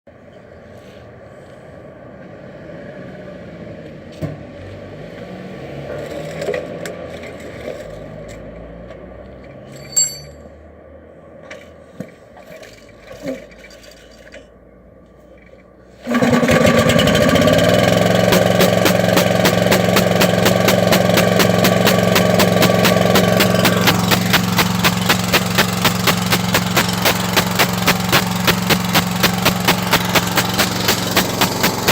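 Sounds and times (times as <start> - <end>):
metallic clink: 9.7 - 10.5
light clicks and scrapes: 11.4 - 14.6
air compressor engine running: 16.0 - 31.9.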